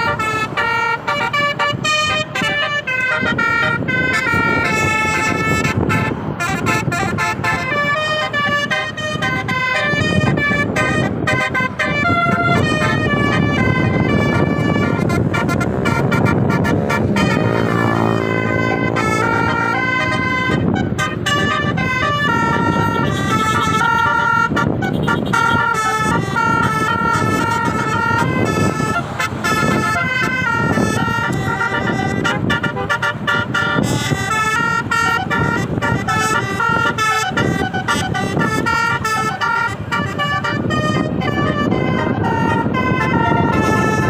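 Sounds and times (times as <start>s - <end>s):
engine noise: 0.0s - 44.0s
multi-tone bus horn tune: 0.0s - 44.0s.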